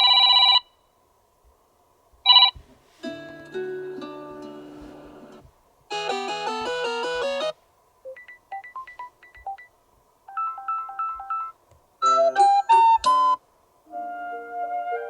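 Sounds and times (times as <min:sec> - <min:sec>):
tablet alarm tones: 0:05.9 - 0:07.5.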